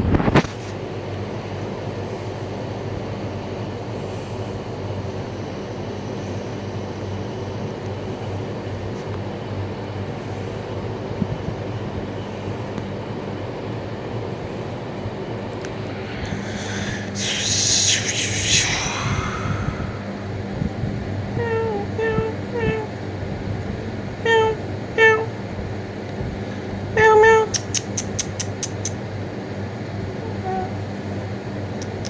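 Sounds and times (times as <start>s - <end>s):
mechanical hum: 0.0s - 32.0s
low rumbling noise: 15.3s - 24.3s.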